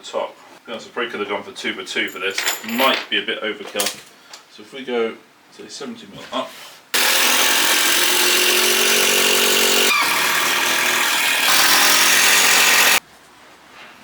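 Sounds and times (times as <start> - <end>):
power tool motor whining: 7.0 - 13.0.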